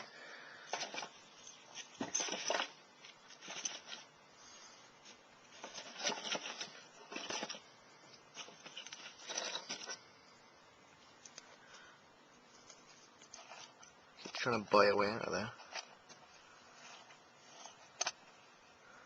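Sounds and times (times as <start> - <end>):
small clicks and scrapes: 0.6 - 4.1, 5.0 - 10.1, 12.5 - 14.5, 15.5 - 18.4
packaging rustling and crinkling: 5.0 - 10.0.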